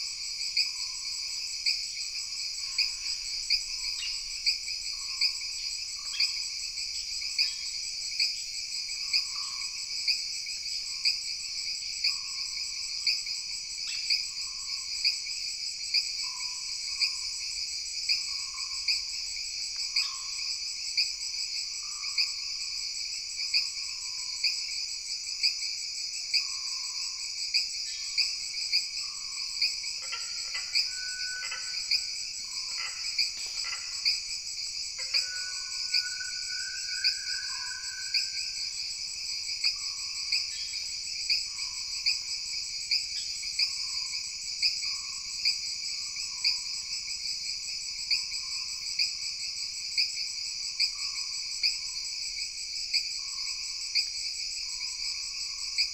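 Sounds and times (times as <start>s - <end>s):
insects trilling: 0.0s - 55.9s
frogs calling: 28.0s - 42.2s.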